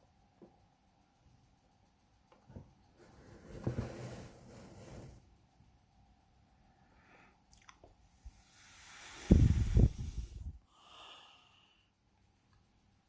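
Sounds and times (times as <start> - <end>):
person breathing into microphone: 8.3 - 11.9.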